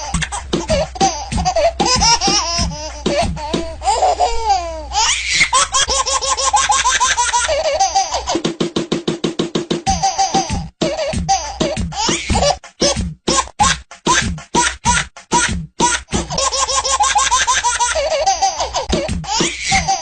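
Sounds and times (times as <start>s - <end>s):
background music: 0.0s - 3.9s
baby laughing: 0.0s - 8.5s, 9.9s - 20.0s.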